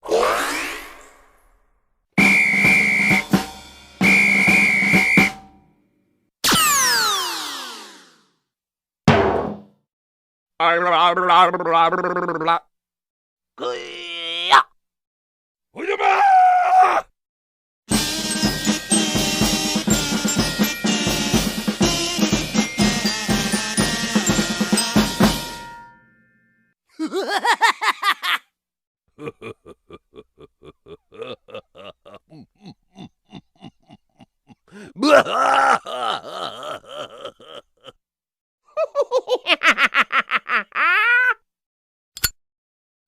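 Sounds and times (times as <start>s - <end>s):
drum beat: 2.2s - 5.5s, 17.9s - 25.8s
sharp click: 42.2s - 42.4s.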